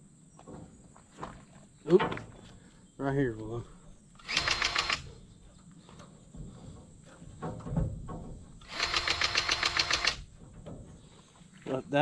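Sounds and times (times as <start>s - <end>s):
grease gun pumping pulses: 4.1s - 5.1s, 8.6s - 10.3s.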